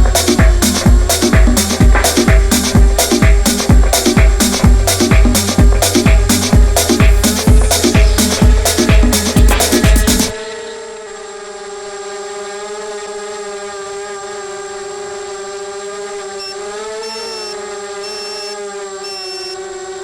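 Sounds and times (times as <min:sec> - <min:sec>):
quadcopter motors buzzing: 0:00.0 - 0:20.0
short high beeps: 0:16.4 - 0:19.6.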